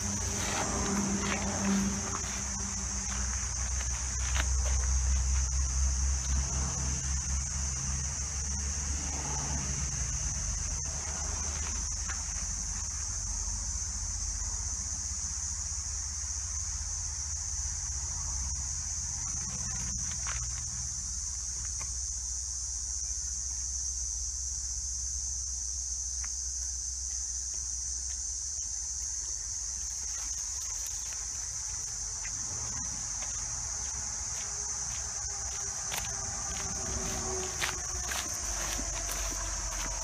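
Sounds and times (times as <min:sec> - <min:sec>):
insects chorus: 0:00.0 - 0:40.0
low rumble: 0:32.0 - 0:40.0.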